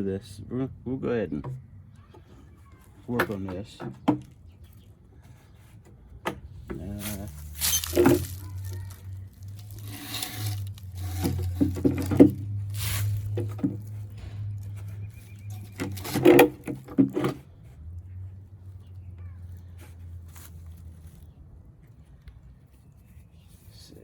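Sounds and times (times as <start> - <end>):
knocks and clicks on plastic: 3.1 - 4.4, 15.5 - 17.4.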